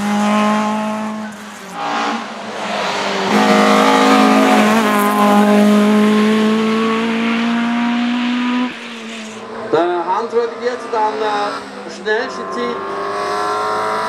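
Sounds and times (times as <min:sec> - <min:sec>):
race car engine accelerating: 0:00.0 - 0:14.0.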